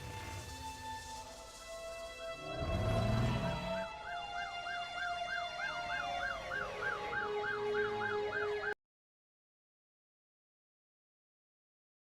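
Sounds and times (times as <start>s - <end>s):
siren yelping: 3.3s - 8.8s.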